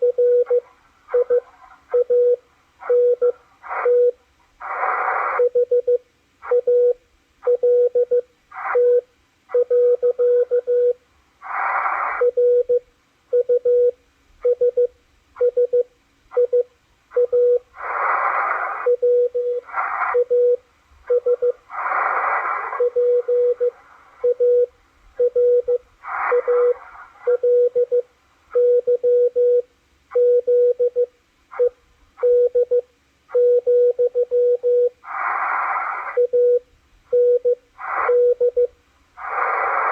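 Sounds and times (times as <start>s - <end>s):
morse code tone: 0.0s - 4.2s, 8.8s - 9.0s, 9.6s - 11.0s, 12.2s - 17.7s, 18.7s - 21.6s, 22.2s - 29.6s, 36.1s - 38.7s
radio band hiss: 2.6s - 5.5s, 11.3s - 12.4s, 17.6s - 20.4s, 21.3s - 24.2s, 25.9s - 27.4s, 35.0s - 36.3s, 37.7s - 38.4s, 39.1s - 39.9s.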